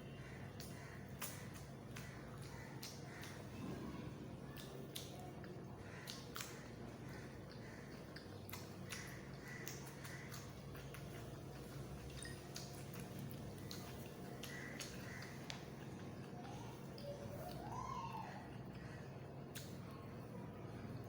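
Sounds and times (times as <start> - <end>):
close-up chewing: 0.0 - 20.3
low background hum: 0.0 - 21.0
wet mouth clicks and smacks: 0.6 - 3.5, 4.6 - 17.6, 19.5 - 19.9.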